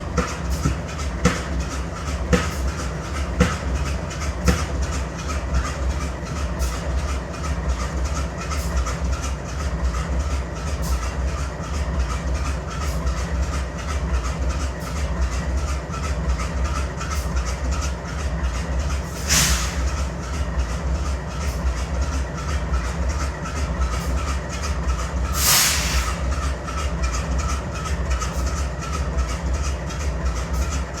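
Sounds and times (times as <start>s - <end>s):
diesel locomotive engine idling: 0.0s - 31.0s
air hissing: 19.2s - 19.9s, 25.3s - 26.3s.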